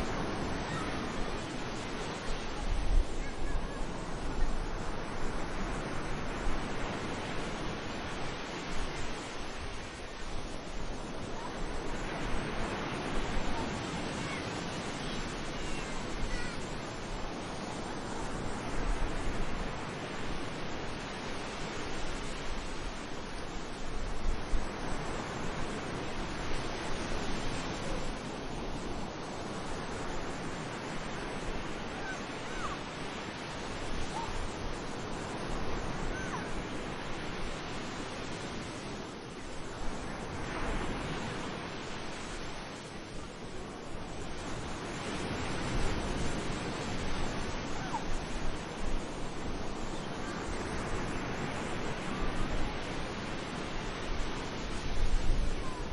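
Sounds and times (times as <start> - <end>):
surf washing onto beach: 0.0 - 55.9
faint high-pitched calls: 31.9 - 32.8, 35.9 - 36.6.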